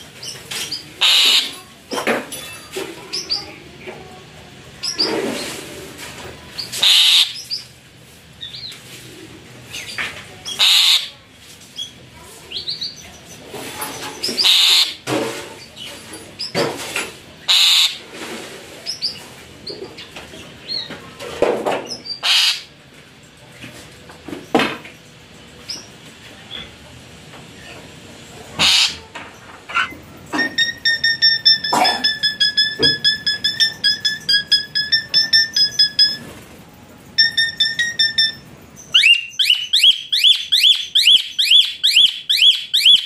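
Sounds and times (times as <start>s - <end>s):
bird chirping: 29.8s - 36.2s, 37.2s - 43.0s.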